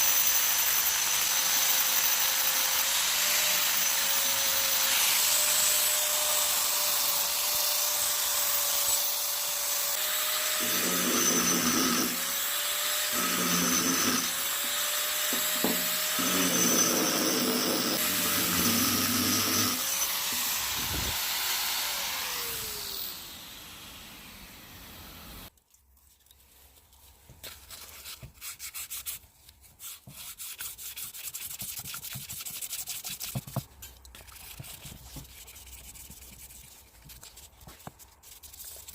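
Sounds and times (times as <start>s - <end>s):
power tool whine: 0.0s - 25.5s
metal grinding: 10.0s - 21.2s
hand rubbing and scraping: 13.2s - 21.2s, 25.5s - 38.9s.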